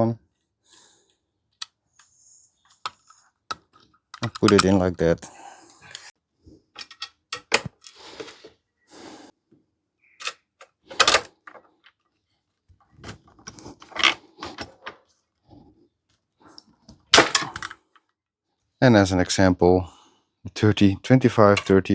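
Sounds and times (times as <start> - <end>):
sharp metallic clicks and knocks: 2.8 - 4.9.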